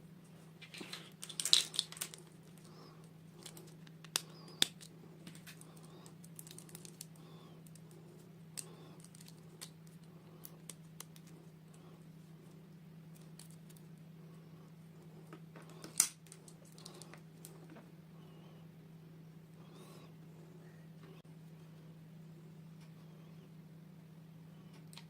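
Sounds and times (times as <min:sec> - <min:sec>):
steady low hum: 0:00.0 - 0:25.0
packaging crinkling: 0:00.6 - 0:08.0, 0:08.6 - 0:11.4, 0:15.7 - 0:17.6
plastic toy pieces clicking: 0:01.2 - 0:02.3.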